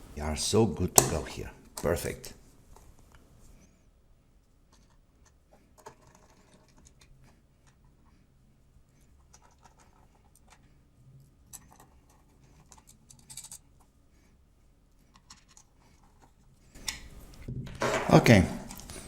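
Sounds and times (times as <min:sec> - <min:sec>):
small parts clicking and scraping: 0:04.7 - 0:08.2, 0:08.9 - 0:18.0.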